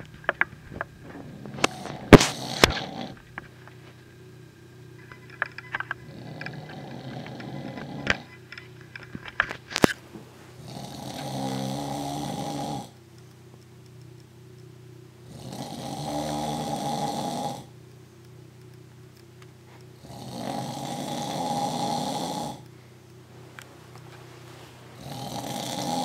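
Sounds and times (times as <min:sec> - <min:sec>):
man snoring: 0:01.0 - 0:03.3, 0:06.0 - 0:08.4, 0:10.6 - 0:13.0, 0:15.2 - 0:17.8, 0:20.0 - 0:22.7, 0:24.9 - 0:26.0.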